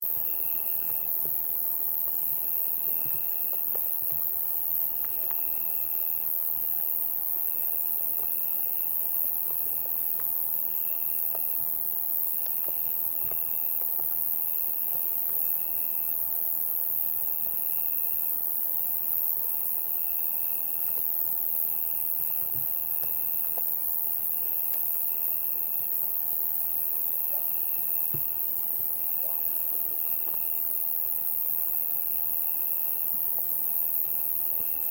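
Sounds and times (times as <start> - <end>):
cricket trill: 0.0 - 34.9
high-pitched insect drone: 16.8 - 34.9.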